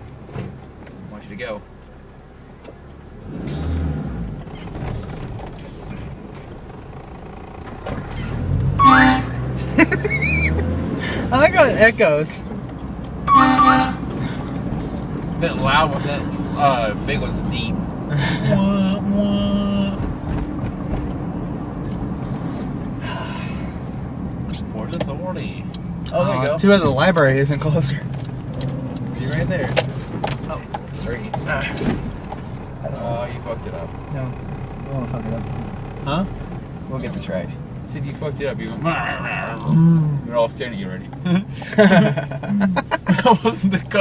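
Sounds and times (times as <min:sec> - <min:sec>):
car engine: 0:00.0 - 0:44.0
road noise: 0:00.0 - 0:44.0
deep air horn blast: 0:08.7 - 0:09.6, 0:13.3 - 0:14.2.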